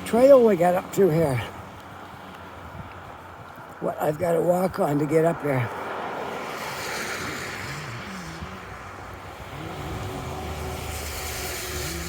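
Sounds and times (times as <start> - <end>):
cars passing on road: 0.0 - 12.0
low engine hum: 6.3 - 12.0.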